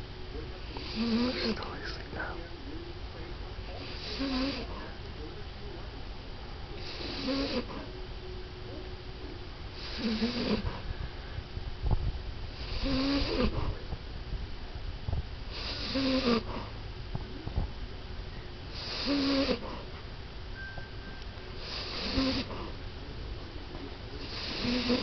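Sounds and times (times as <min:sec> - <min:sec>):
dog snoring: 0:00.6 - 0:02.2, 0:03.7 - 0:05.0, 0:06.8 - 0:07.9, 0:09.7 - 0:10.9, 0:12.6 - 0:13.9, 0:15.4 - 0:16.8, 0:18.7 - 0:20.0, 0:21.6 - 0:22.8, 0:24.2 - 0:25.0.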